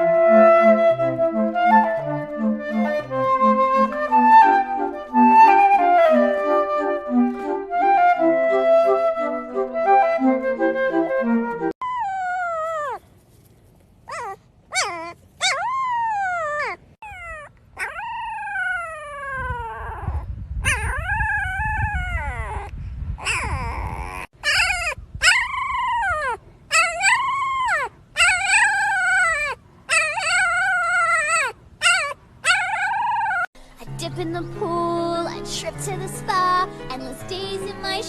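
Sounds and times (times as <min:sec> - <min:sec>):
dog howling and whining: 0:11.8 - 0:13.0, 0:14.1 - 0:33.5.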